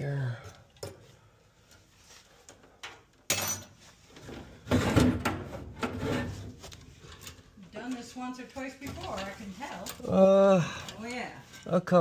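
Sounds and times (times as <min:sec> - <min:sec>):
sheet metal scraping and clunking: 0:04.2 - 0:10.0.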